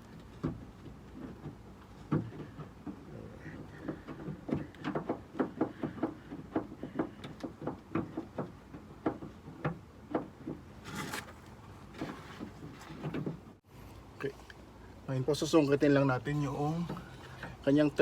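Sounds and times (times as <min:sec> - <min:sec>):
light clicks and knocks: 0:00.0 - 0:13.6
short scrape: 0:10.8 - 0:12.9.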